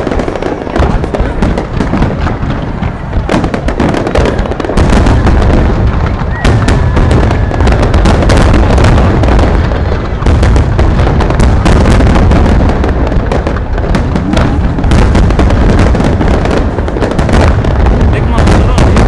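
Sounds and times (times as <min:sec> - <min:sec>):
fireworks bangs and crackles: 0:00.0 - 0:19.0
heavy low rumble: 0:04.3 - 0:19.0.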